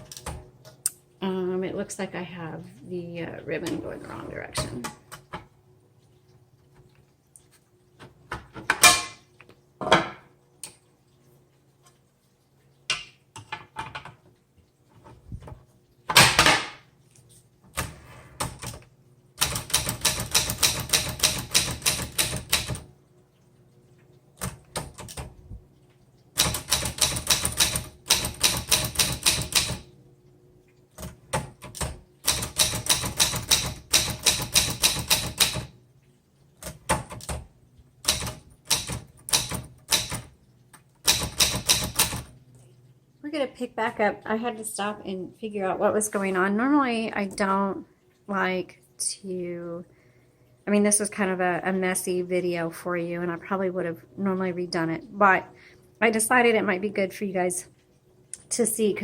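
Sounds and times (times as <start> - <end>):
typewriter clacks: 19.4 - 22.8, 26.4 - 29.8, 31.4 - 35.7, 38.0 - 40.3, 41.0 - 42.3
rapid typewriter keystrokes: 19.4 - 22.9, 24.4 - 25.3, 26.4 - 29.9, 31.0 - 35.7, 36.6 - 40.4, 41.0 - 42.3.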